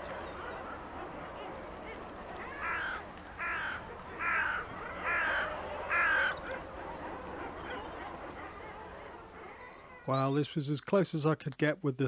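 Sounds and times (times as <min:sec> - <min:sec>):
bird cawing: 0:02.6 - 0:06.4.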